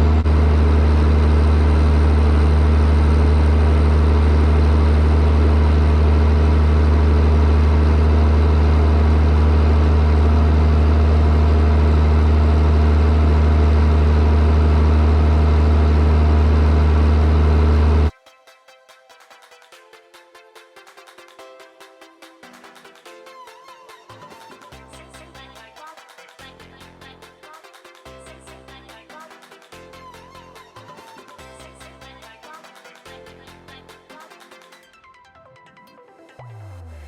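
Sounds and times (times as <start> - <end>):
baler machinery: 0.0 - 18.1
tractor engine hum: 0.0 - 18.1.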